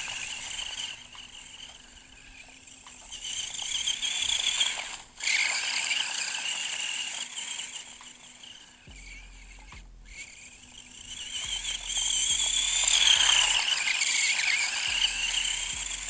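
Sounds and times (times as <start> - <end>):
rattling drivetrain: 0.0 - 16.0
rc car motor whining: 0.0 - 16.0.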